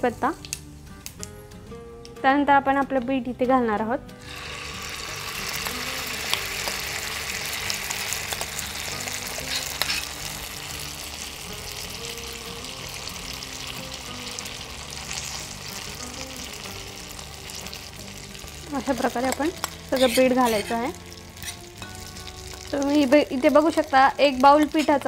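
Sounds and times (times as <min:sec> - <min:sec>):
batter sizzling in hot oil: 0:04.2 - 0:25.0.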